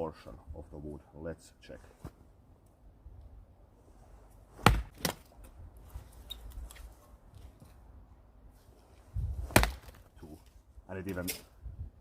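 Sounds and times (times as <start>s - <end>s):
axe chopping wood: 4.6s - 5.3s, 9.5s - 10.0s.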